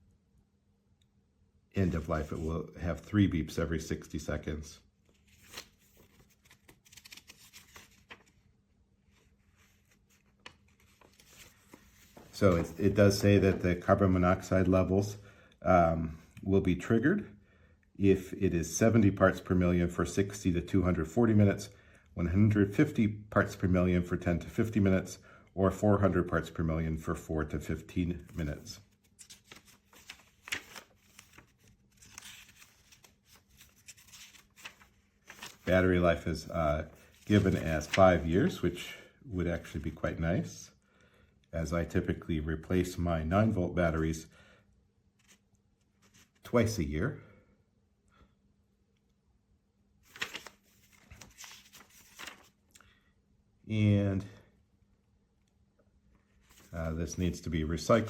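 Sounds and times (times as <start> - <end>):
paper rustling and clicking: 5.3 - 8.4, 28.3 - 35.8, 37.0 - 38.2, 50.1 - 52.8
faint handling rustles and clicks: 9.2 - 13.8.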